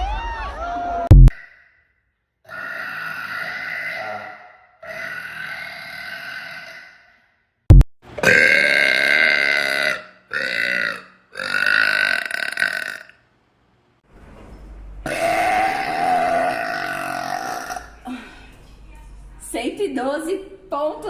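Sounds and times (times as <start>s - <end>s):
long loud belches: 8.2s - 13.2s, 15.1s - 18.1s.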